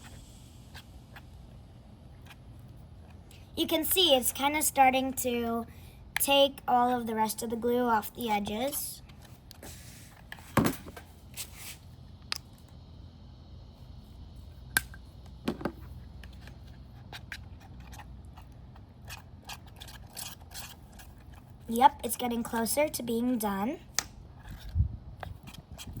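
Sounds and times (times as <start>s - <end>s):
tool knocking against container: 15.4s - 15.8s
slime scraping and squishing: 16.4s - 21.6s.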